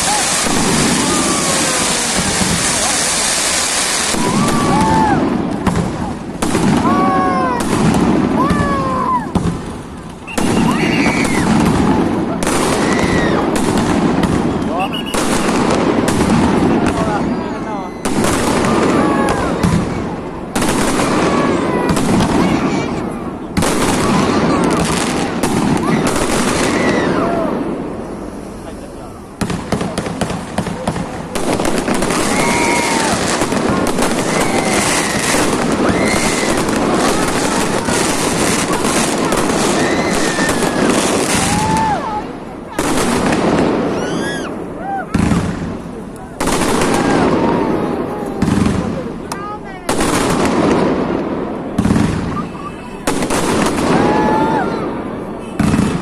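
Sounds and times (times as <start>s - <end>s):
firework shells bursting: 0.0s - 6.9s
crackling of firework bursts: 0.0s - 56.0s
firework bangs: 0.0s - 56.0s
whistling fireworks: 0.0s - 56.0s.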